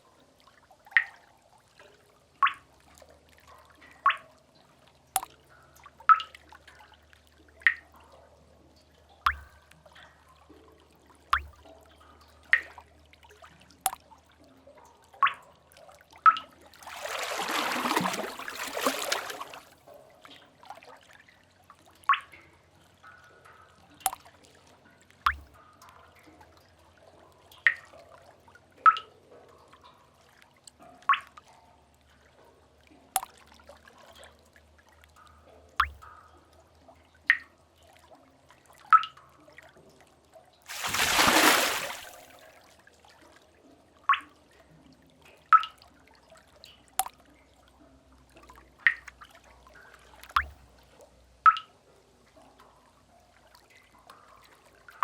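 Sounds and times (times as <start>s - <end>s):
water drops plinking into pool: 0.4s - 31.6s, 32.8s - 34.4s, 35.0s - 38.2s, 38.8s - 39.4s, 40.7s - 42.4s, 44.0s - 44.6s, 45.2s - 47.8s, 48.4s - 52.7s
waves washing: 16.8s - 19.6s, 40.7s - 42.2s.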